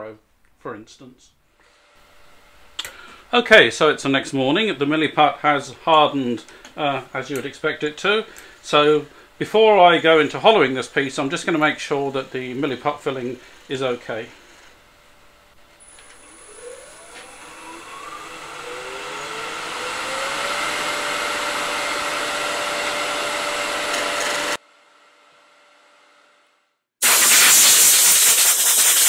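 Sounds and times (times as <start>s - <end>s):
wood lathe motor whining: 15.8s - 24.6s
loud even hissing: 27.0s - 29.0s.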